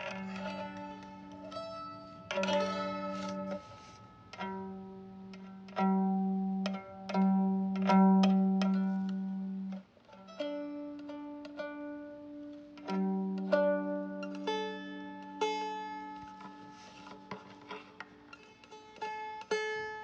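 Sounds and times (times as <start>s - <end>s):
long held low notes: 0.0s - 11.7s
plucked notes: 0.0s - 20.0s.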